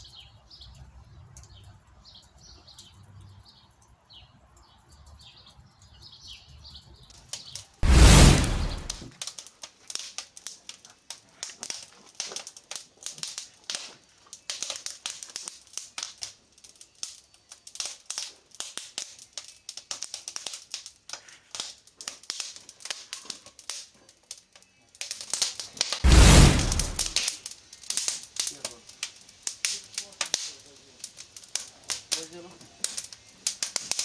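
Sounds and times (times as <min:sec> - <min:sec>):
loud rush: 0:07.8 - 0:09.1, 0:26.0 - 0:27.2
wood fire crackling: 0:07.8 - 0:09.1, 0:26.0 - 0:34.0.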